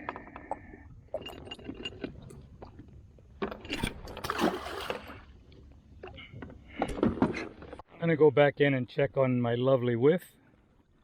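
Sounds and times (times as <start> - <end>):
splashing and rustling: 3.8 - 5.2.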